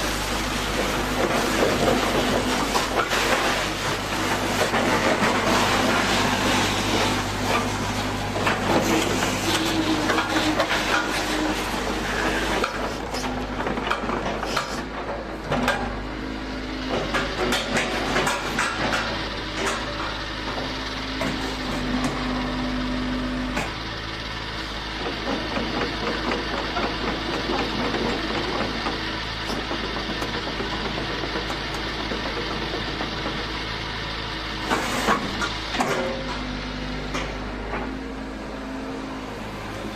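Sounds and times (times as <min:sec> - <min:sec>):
diesel engine humming: 0:19.2 - 0:39.9.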